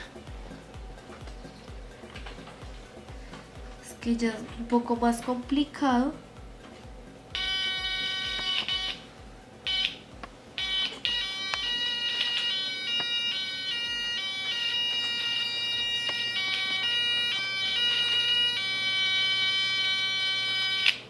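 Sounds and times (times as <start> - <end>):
two-tone electronic siren: 7.3 - 9.1, 9.7 - 10.0, 10.6 - 21.0.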